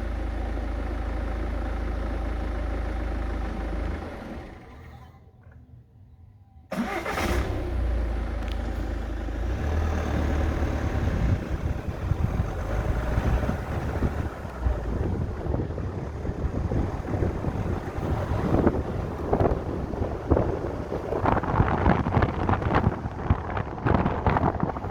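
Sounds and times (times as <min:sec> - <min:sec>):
diesel engine idling: 0:00.0 - 0:05.2, 0:06.7 - 0:24.9.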